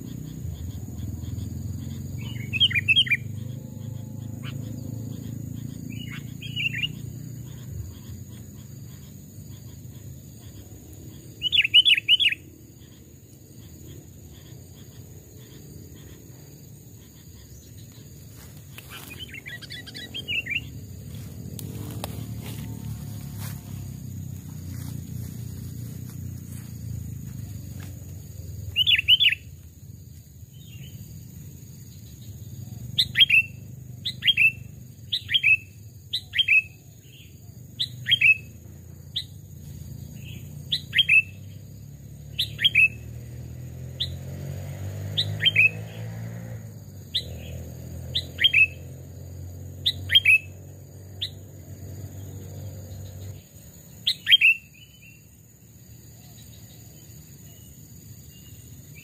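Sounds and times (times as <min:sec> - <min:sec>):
low steady rumble: 0:12.4 - 0:35.1.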